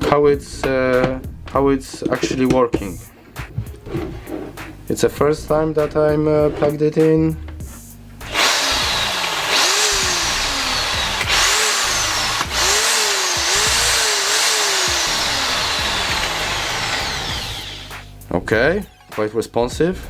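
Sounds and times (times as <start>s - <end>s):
hammer drill motor whine: 8.3s - 18.1s.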